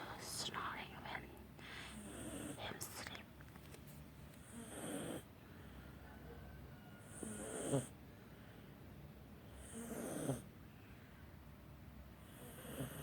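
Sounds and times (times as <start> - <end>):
cat snoring: 1.9 - 2.6, 4.4 - 5.3, 7.0 - 8.0, 9.5 - 10.5, 12.2 - 13.0.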